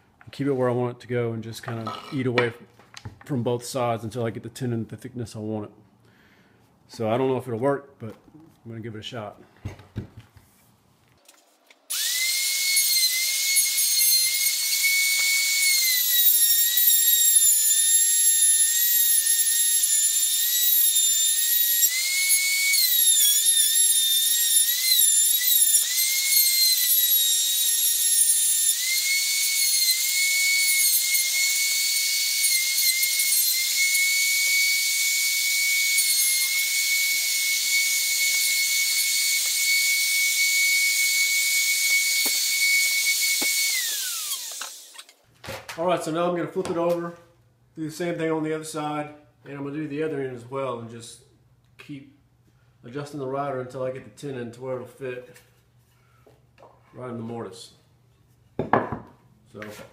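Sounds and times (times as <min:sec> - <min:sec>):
electric router whining: 0:11.9 - 0:45.1
router bit cutting wood: 0:11.9 - 0:45.1.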